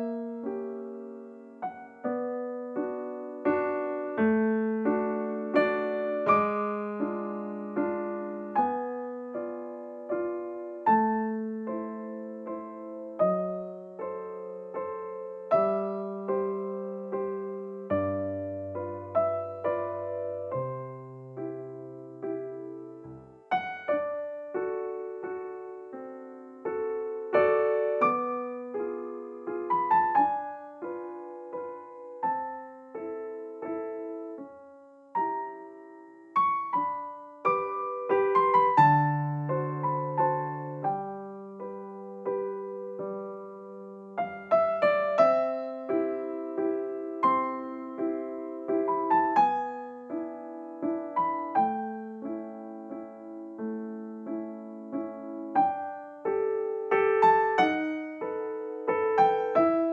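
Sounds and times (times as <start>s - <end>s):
gentle piano piece: 0.0s - 59.9s.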